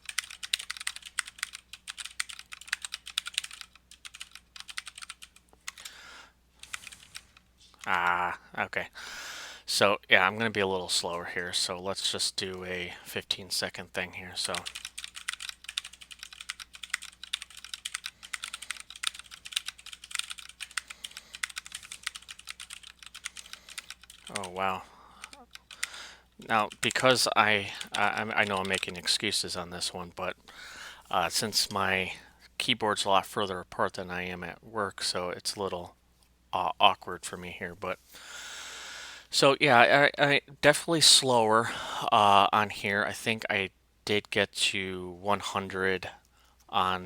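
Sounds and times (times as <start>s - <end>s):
fast keyboard typing clicks: 0.0s - 5.9s, 14.5s - 24.6s, 25.2s - 27.0s, 27.8s - 29.0s.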